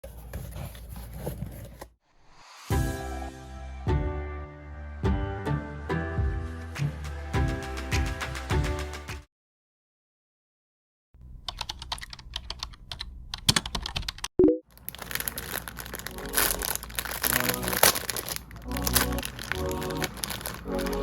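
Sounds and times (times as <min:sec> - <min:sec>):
plastic packaging crinkling: 0:14.7 - 0:21.0.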